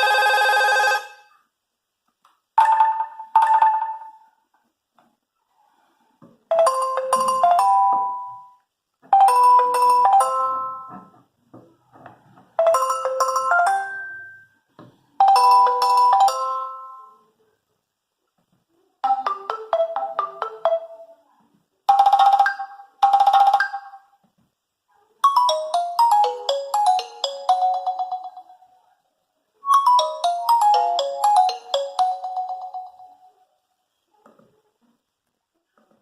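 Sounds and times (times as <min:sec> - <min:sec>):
phone ringtone melody: 0:00.0 - 0:01.3, 0:06.5 - 0:08.6, 0:09.2 - 0:11.0, 0:12.6 - 0:14.5, 0:15.2 - 0:17.2, 0:21.9 - 0:24.1, 0:25.2 - 0:28.7, 0:29.7 - 0:33.4.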